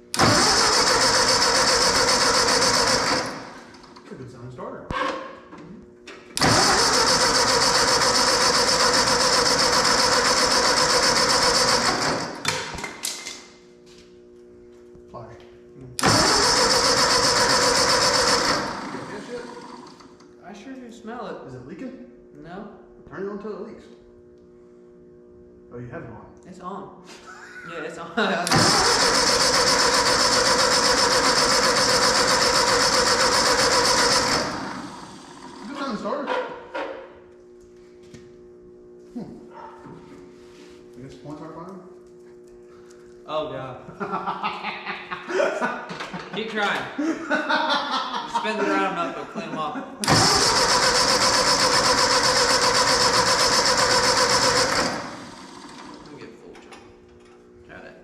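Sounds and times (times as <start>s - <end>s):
starter cranking tractor engine: 0.1s - 4.0s, 6.4s - 12.6s, 16.0s - 20.2s, 28.4s - 35.9s, 50.0s - 56.2s.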